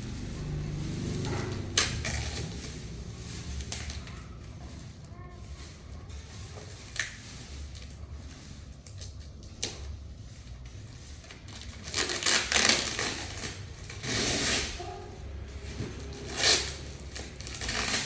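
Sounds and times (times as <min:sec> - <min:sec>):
packaging crinkling: 0:06.6 - 0:14.8, 0:16.0 - 0:18.0.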